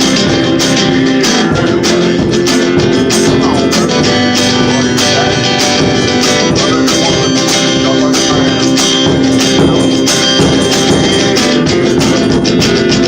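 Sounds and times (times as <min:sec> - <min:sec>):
percussion hits: 0:00.0 - 0:13.0
strummed guitar: 0:00.0 - 0:13.0.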